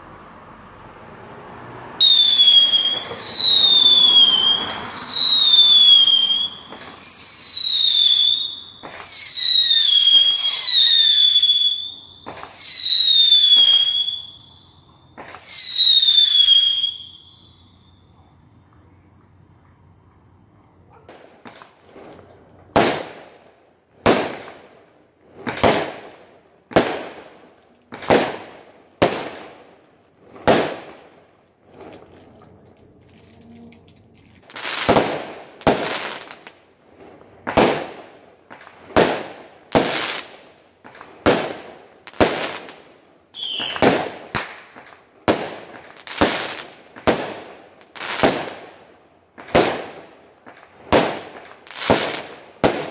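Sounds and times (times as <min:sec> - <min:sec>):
whistling fireworks shrieking: 0:01.3 - 0:18.2, 0:20.9 - 0:52.9
firework bangs with echo: 0:22.7 - 0:23.4, 0:24.0 - 0:24.8, 0:25.4 - 0:31.2, 0:34.8 - 0:36.4, 0:37.4 - 0:42.8, 0:43.4 - 0:52.9.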